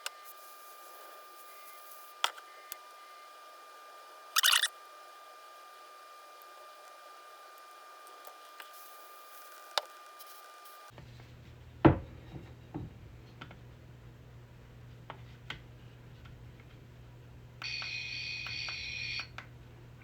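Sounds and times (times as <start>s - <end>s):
high electronic buzzing tone: 4.4s - 4.7s.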